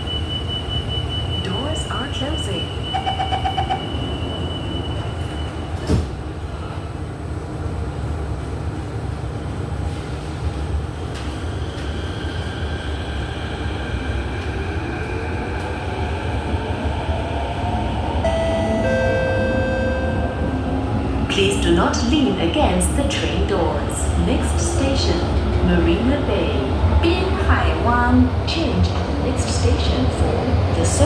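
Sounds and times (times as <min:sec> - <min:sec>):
train rumbling in tunnel: 0:00.0 - 0:31.0.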